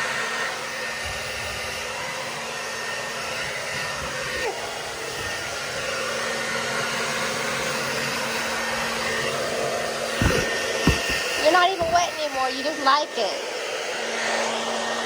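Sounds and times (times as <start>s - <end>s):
hair dryer blowing: 0.0s - 15.0s.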